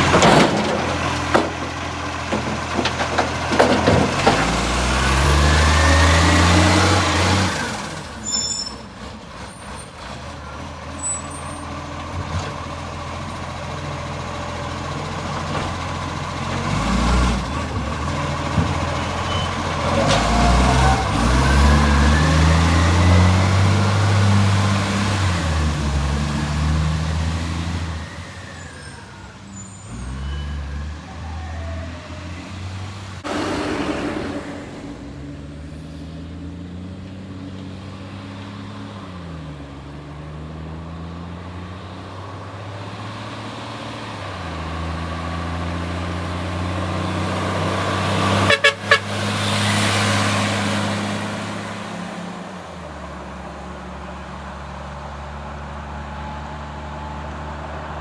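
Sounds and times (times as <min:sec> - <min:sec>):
diesel truck engine with blatty exhaust: 0:00.0 - 0:58.0
burst of hiss: 0:33.3 - 0:35.2.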